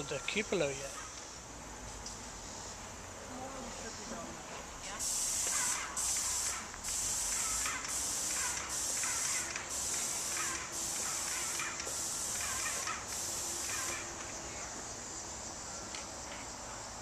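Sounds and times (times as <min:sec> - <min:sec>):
crickets trilling: 0:00.0 - 0:17.0
insects buzzing in pulsing hiss: 0:00.0 - 0:17.0.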